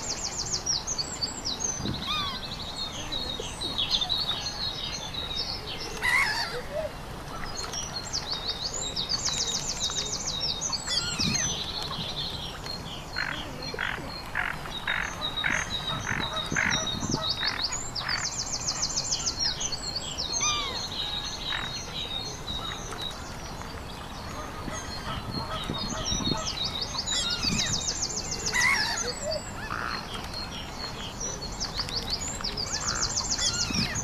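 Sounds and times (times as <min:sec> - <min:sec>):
songbirds singing: 0:00.0 - 0:34.0
croaking calls: 0:13.2 - 0:18.3.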